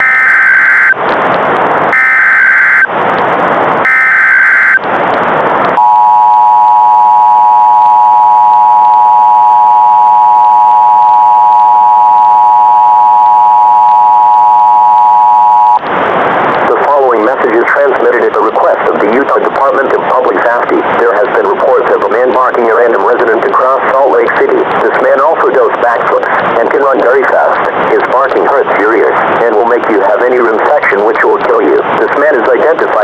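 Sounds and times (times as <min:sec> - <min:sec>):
screeching digital data bursts: 0:00.0 - 0:01.0, 0:01.9 - 0:02.9, 0:03.8 - 0:04.8
two-tone attention signal: 0:02.0 - 0:02.9, 0:03.9 - 0:04.8, 0:05.8 - 0:15.8.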